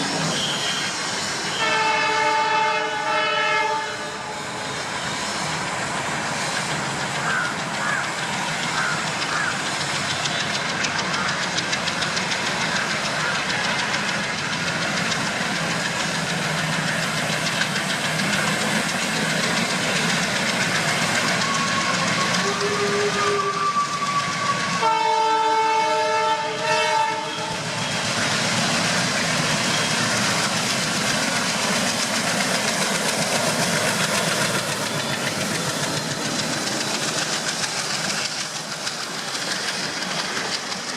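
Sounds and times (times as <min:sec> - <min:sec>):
train running on track: 0:00.0 - 0:40.9
locomotive horn: 0:00.3 - 0:04.4, 0:21.4 - 0:27.7.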